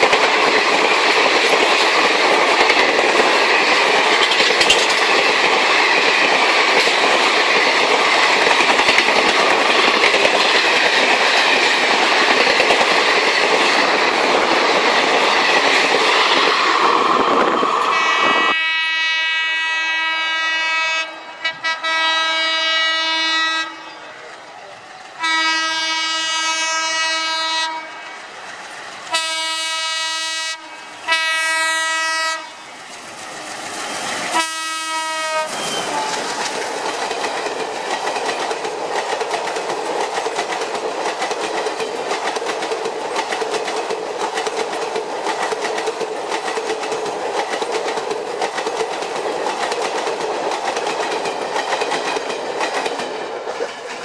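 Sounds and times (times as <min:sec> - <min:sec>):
wheels clacking over rail joints: 0:00.0 - 0:17.9, 0:32.6 - 0:54.0
train rumbling past: 0:00.0 - 0:54.0
train horn blasts: 0:17.9 - 0:24.1, 0:25.2 - 0:28.1, 0:29.1 - 0:32.6, 0:34.3 - 0:36.2.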